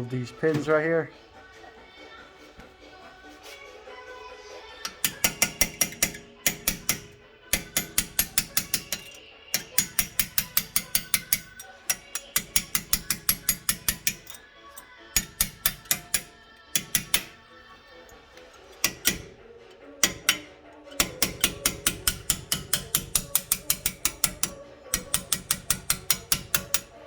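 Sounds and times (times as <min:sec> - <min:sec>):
hammer tapping a metal punch: 0:04.8 - 0:17.4, 0:18.4 - 0:27.0.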